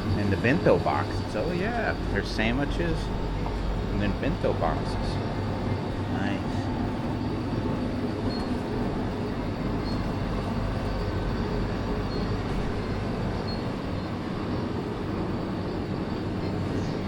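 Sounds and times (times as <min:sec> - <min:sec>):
shop ambience rumble and hiss: 0:00.0 - 0:17.0.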